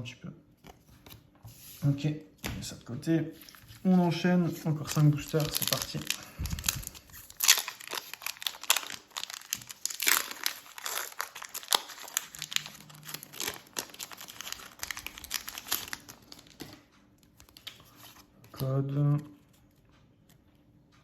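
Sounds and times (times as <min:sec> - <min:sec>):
foil wrapper crinkling: 0:03.4 - 0:16.8.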